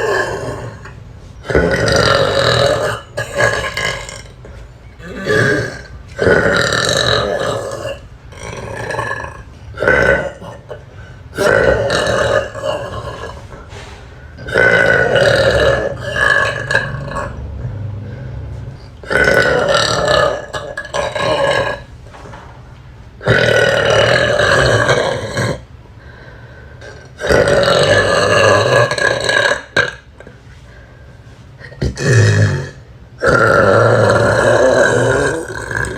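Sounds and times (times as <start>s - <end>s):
woman burping loudly: 0.0s - 13.5s, 14.4s - 17.4s, 19.0s - 21.9s, 31.6s - 35.9s.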